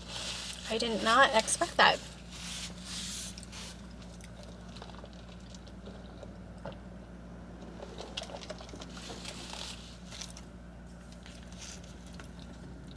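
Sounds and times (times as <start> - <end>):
person chewing: 3.3 - 6.8, 7.6 - 10.5.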